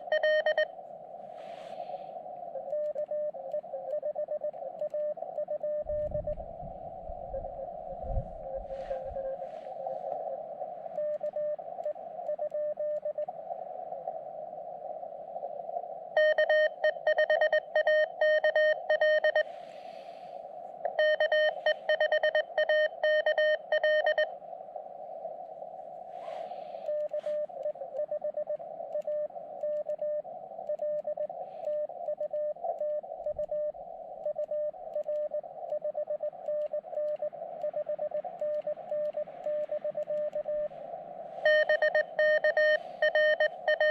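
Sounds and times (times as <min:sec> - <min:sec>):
morse code sidetone: 0:00.0 - 0:00.7, 0:16.2 - 0:20.0, 0:20.9 - 0:24.4, 0:41.4 - 0:43.9
receiver hiss: 0:00.0 - 0:43.9
weak morse code replies: 0:41.4 - 0:43.9.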